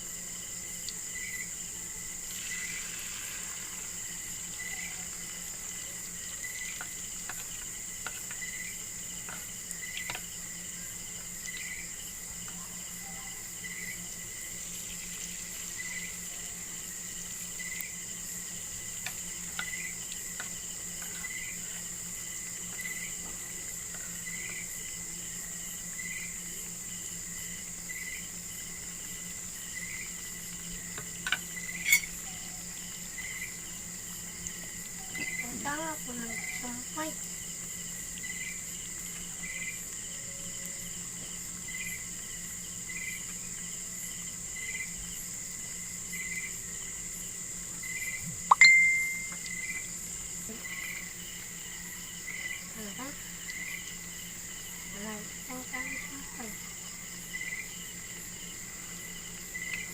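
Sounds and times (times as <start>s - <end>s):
crickets calling: 0.0s - 59.9s.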